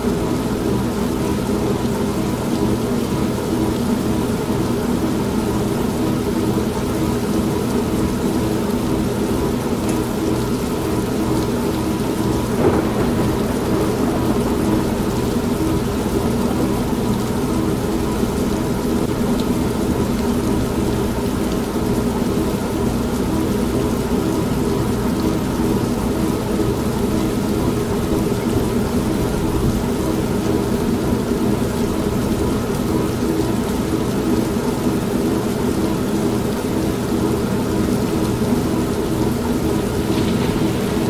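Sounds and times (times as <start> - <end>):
steady rain: 0.0 - 41.0
washing machine humming: 9.6 - 22.7
low rumbling thunder: 12.0 - 20.0, 39.3 - 41.0.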